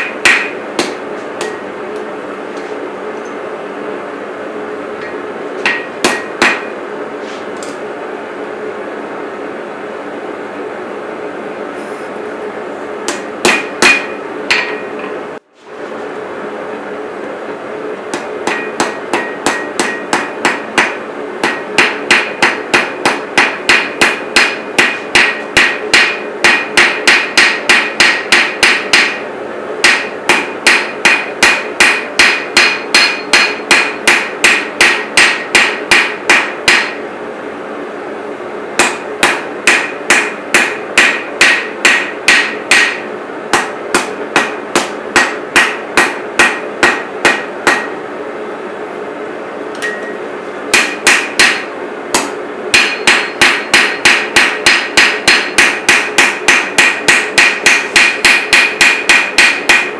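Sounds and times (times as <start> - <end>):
hammer striking steel on anvil: 0.0 - 2.1, 5.0 - 6.8, 13.1 - 15.2, 18.1 - 37.0, 38.8 - 48.0, 49.8 - 59.9
steady hum: 0.0 - 59.9.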